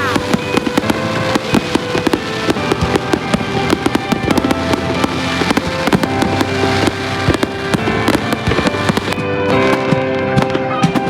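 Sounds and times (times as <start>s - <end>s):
fireworks bangs and pops: 0.0s - 11.0s
music playing: 0.0s - 11.0s.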